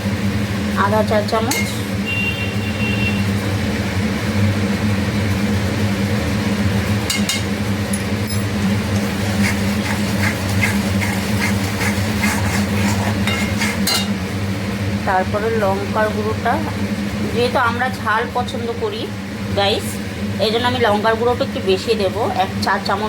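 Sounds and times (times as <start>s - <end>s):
steady electric hum: 0.0s - 23.0s
spices frying: 3.2s - 23.0s
metal spatula scraping a pan: 9.0s - 14.2s.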